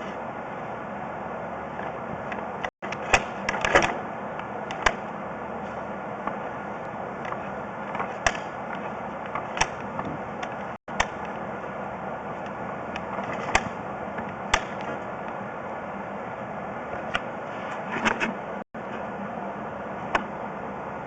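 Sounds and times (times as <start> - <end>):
steady background noise: 0.0 - 21.0
push cable clicks and knocks: 7.2 - 11.4.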